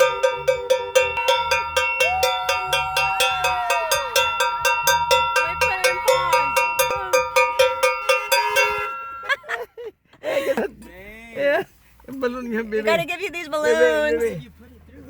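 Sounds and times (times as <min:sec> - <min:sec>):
cowbell beaten fast: 0:00.0 - 0:09.6.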